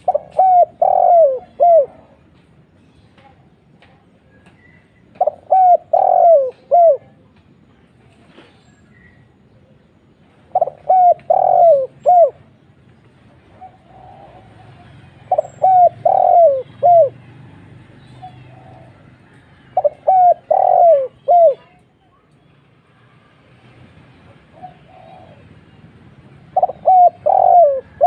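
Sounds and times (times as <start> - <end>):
dove cooing: 0.0 - 2.2, 5.1 - 7.2, 10.5 - 12.5, 13.5 - 17.3, 18.0 - 21.8, 24.5 - 25.7, 26.4 - 28.0.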